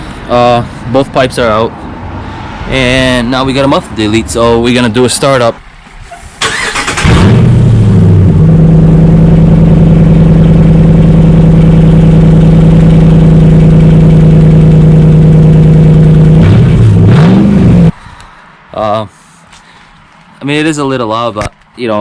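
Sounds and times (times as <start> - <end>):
engine revving: 6.2 - 18.0
starter cranking: 6.4 - 7.3.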